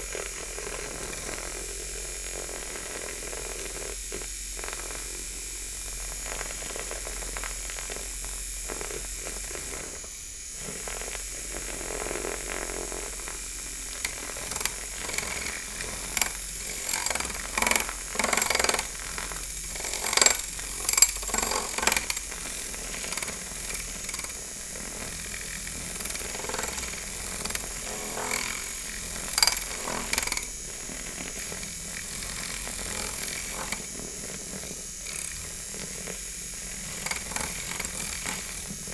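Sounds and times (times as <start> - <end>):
milk frother hissing whine: 12.4 - 38.9.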